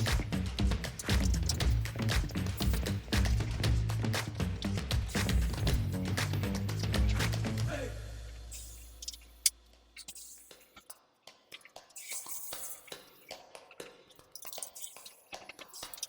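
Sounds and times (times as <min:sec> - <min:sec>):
background music: 0:00.0 - 0:08.8.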